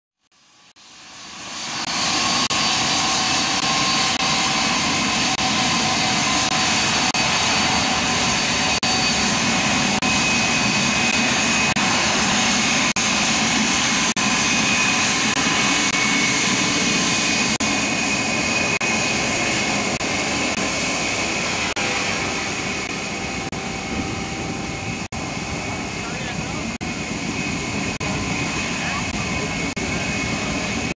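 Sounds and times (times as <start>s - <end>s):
jet engines running: 0.4s - 30.9s.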